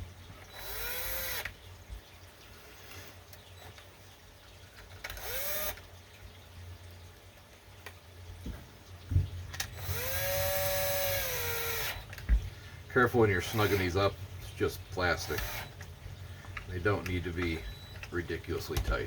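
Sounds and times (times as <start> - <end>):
power drill motor whining: 0.4 - 1.6, 5.1 - 5.8, 9.6 - 12.4, 13.4 - 14.1, 15.2 - 15.8, 17.5 - 18.2.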